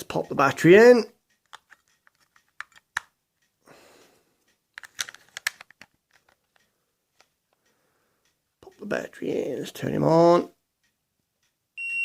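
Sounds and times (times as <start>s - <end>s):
small plastic clicks: 1.3s - 3.1s, 4.8s - 7.6s.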